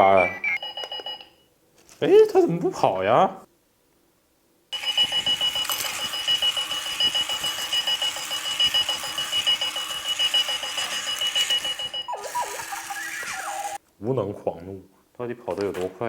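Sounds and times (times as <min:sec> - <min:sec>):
alarm clock ringing: 0:04.8 - 0:13.8.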